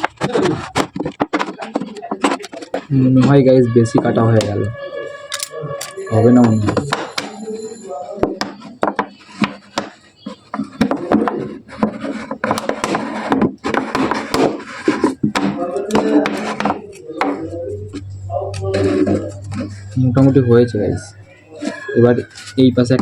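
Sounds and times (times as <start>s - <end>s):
knife scraping plastic bottle: 9.2s - 15.2s.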